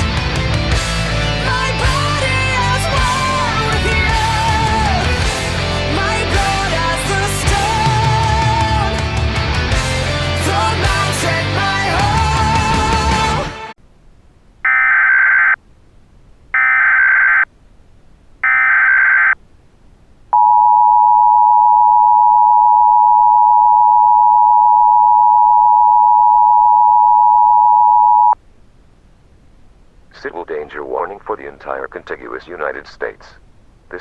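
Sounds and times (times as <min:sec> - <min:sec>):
music: 0:00.0 - 0:13.8.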